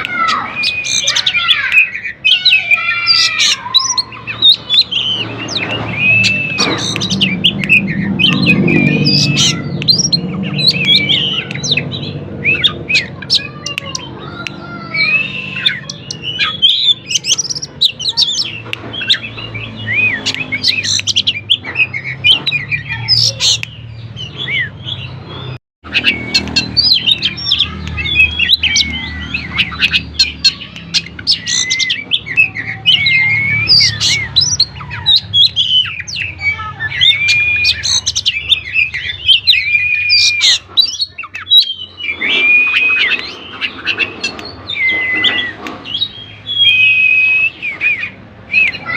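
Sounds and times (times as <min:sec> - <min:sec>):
songbird whistling and chirping: 0:00.0 - 0:48.9.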